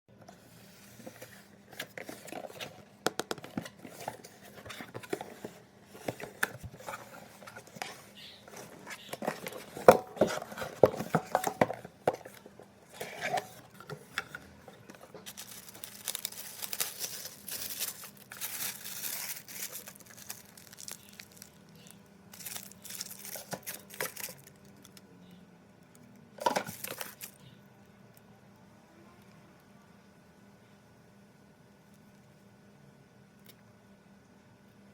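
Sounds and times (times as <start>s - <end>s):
packaging crinkling and tearing: 3.5s - 25.0s, 26.4s - 27.4s.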